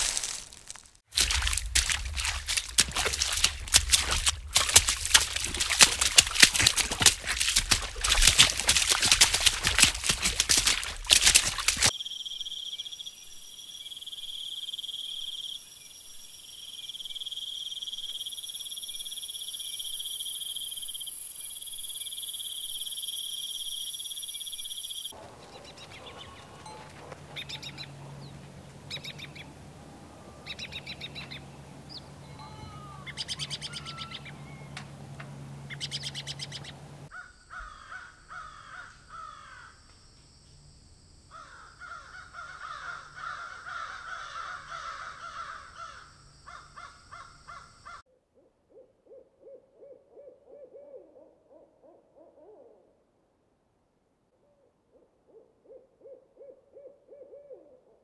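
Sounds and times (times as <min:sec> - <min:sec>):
low steady hum: 0:01.1 - 0:11.9, 0:25.2 - 0:37.1
birds chirping: 0:01.2 - 0:11.9, 0:24.6 - 0:37.8
crows cawing: 0:32.4 - 0:34.3, 0:37.1 - 0:39.8, 0:41.3 - 0:48.0.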